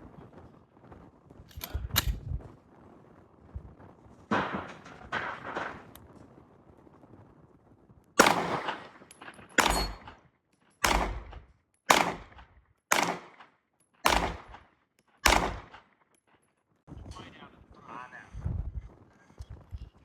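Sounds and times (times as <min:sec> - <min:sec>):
pistol shots with echo: 0:08.2 - 0:10.2, 0:10.8 - 0:15.8.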